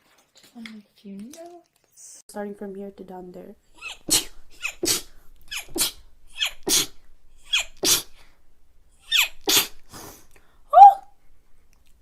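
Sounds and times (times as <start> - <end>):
person sneezing: 3.8 - 8.2, 9.1 - 11.1.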